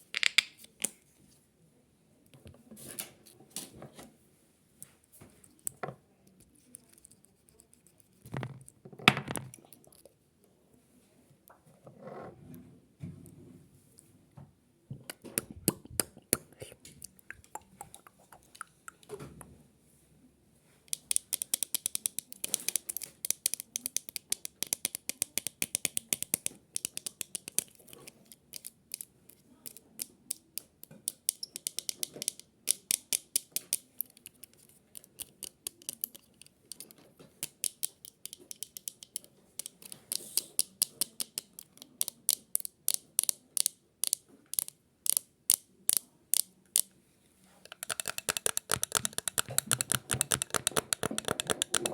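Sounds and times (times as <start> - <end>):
rapid sharp clicking: 47.7 - 51.9.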